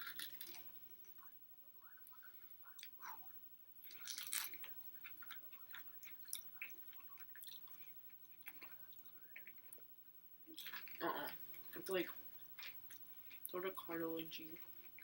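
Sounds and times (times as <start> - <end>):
person chewing wet clicks: 2.1 - 3.2, 3.8 - 9.9, 10.5 - 13.8, 14.4 - 15.0.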